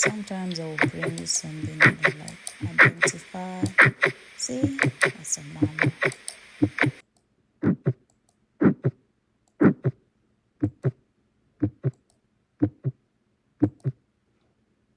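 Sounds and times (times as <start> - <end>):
heartbeat lub-dub: 0.0 - 7.0, 7.6 - 8.0, 8.6 - 9.0, 9.6 - 10.0, 10.6 - 11.0, 11.6 - 12.0, 12.6 - 13.0, 13.6 - 14.0.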